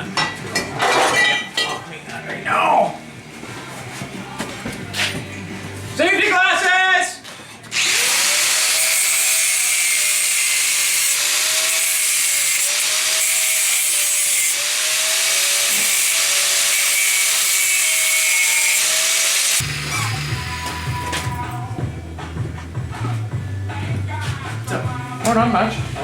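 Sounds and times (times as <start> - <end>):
music: 0.0 - 9.2, 19.6 - 26.0
angle grinder grinding steel: 7.7 - 21.7.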